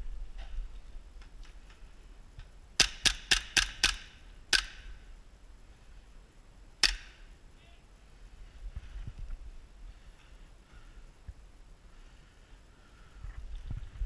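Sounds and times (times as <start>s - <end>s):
airsoft gun shots: 2.8s - 4.9s, 6.8s - 7.3s.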